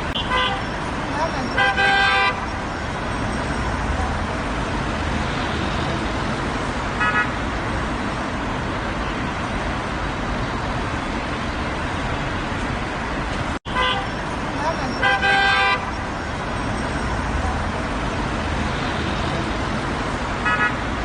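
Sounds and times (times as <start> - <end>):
passing cars: 0.0 - 21.0
car horn toot: 0.1 - 0.7, 1.4 - 2.5, 13.7 - 14.2, 14.9 - 15.9, 20.4 - 20.8.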